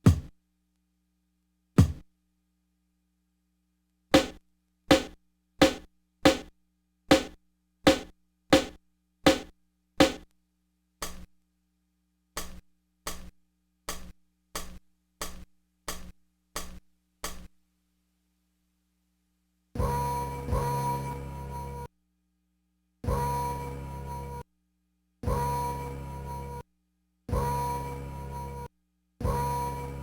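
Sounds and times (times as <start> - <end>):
sampled drum hits: 0.0 - 0.3, 1.8 - 2.0, 4.2 - 6.5, 7.1 - 10.2.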